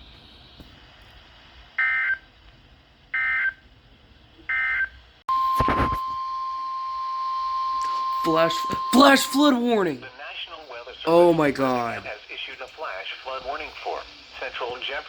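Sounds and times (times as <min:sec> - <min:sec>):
steady warning alarm tone: 0:04.5 - 0:10.1.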